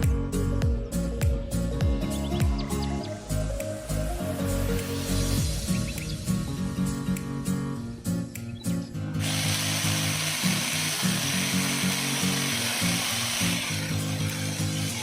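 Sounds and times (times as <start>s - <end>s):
background music with steady beat: 0.0s - 15.0s
chainsaw cutting wood: 9.2s - 15.0s.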